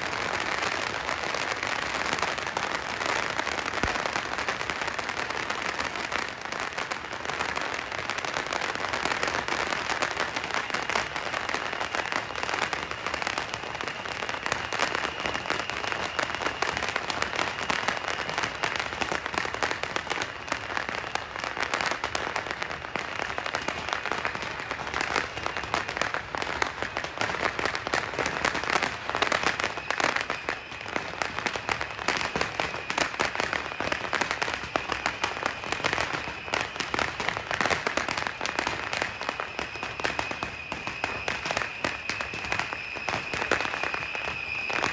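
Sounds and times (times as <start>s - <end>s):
faint high whistle: 0.0s - 44.9s
firecrackers crackling: 0.0s - 44.9s.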